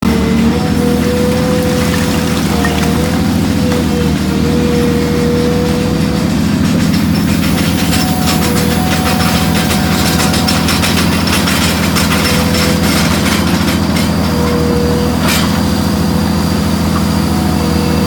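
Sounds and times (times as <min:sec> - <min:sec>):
diesel engine drone: 0:00.0 - 0:18.0
rock rattling through crusher: 0:00.8 - 0:04.7, 0:06.3 - 0:14.7.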